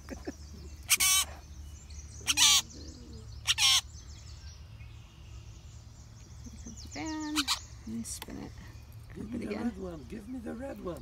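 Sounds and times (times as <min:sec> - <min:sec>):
bird harsh calls: 0:00.0 - 0:08.8.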